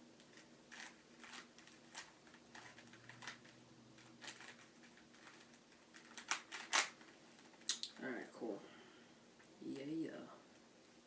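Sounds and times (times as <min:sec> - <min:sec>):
plastic puzzle cube clicking: 0:00.2 - 0:07.9.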